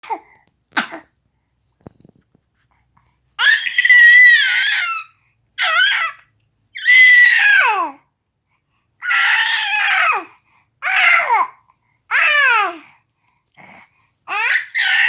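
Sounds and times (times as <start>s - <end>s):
baby screaming: 3.4s - 6.2s, 6.8s - 7.9s, 9.0s - 11.5s, 12.1s - 12.8s, 14.3s - 15.0s.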